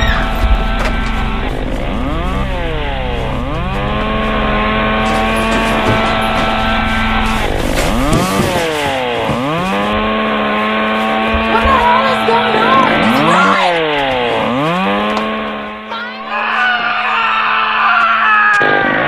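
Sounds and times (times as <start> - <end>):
chainsaw engine revving: 0.0 - 15.9.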